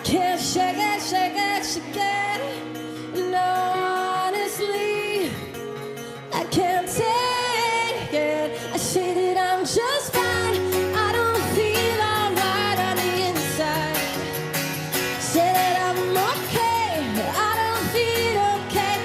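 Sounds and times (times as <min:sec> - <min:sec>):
woman singing: 0:00.0 - 0:14.4, 0:15.1 - 0:19.0
rock band playing live: 0:00.0 - 0:19.0
bass guitar: 0:08.0 - 0:19.0.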